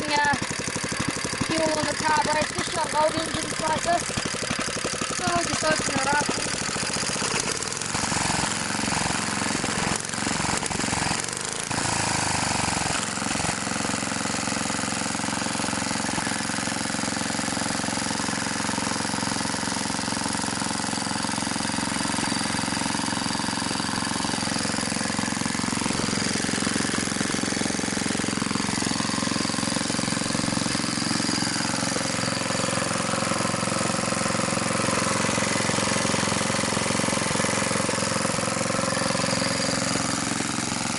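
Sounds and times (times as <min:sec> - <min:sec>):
engine knocking: 0:00.0 - 0:40.9
stationary engine running unmuffled: 0:00.0 - 0:40.9.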